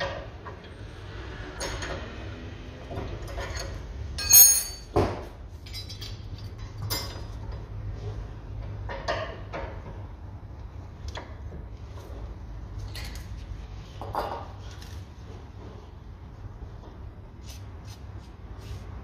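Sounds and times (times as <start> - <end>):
metal tools clinking: 3.3 - 5.0, 5.6 - 7.4.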